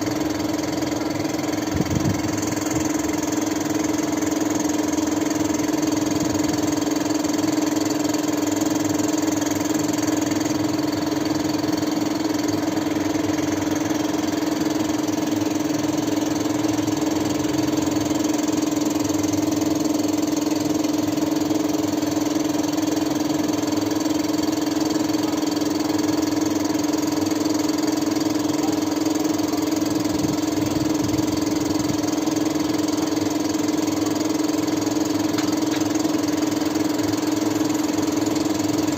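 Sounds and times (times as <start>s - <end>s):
motor humming: 0.0s - 7.6s.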